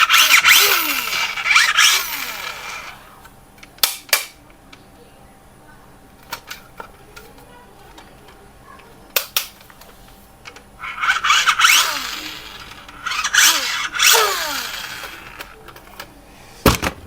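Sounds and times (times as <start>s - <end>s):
sharp plastic clicks: 3.6s - 4.8s, 9.1s - 16.1s.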